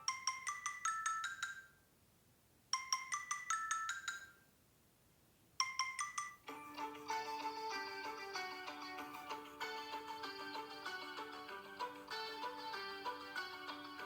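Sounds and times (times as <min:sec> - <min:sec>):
chime-like phone ringtone: 0:00.0 - 0:01.8, 0:02.8 - 0:04.4, 0:05.6 - 0:14.0
fuller ringtone melody: 0:00.0 - 0:01.8, 0:02.8 - 0:04.4, 0:05.6 - 0:14.0.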